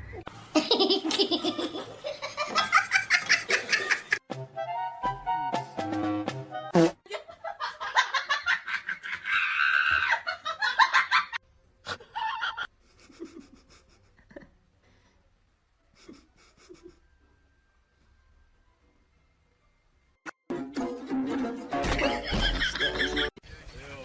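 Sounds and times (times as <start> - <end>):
hearty laughter: 0.6 - 4.2, 7.1 - 14.6, 16.0 - 17.0, 22.0 - 23.4.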